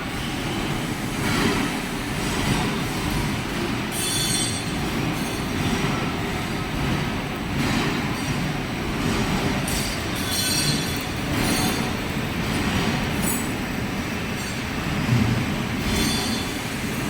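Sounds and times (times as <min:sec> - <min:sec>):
metal lathe rumble: 0:00.0 - 0:17.0
high metallic squeals: 0:03.9 - 0:05.4, 0:10.0 - 0:12.0, 0:15.8 - 0:16.7.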